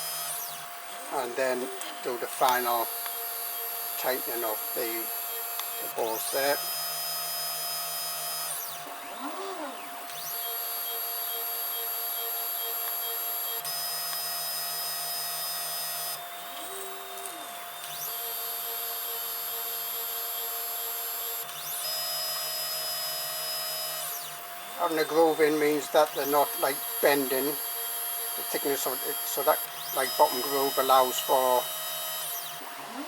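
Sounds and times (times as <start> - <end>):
stepper motors whining: 0.0 - 33.0
rising and falling motor tone: 16.5 - 19.0.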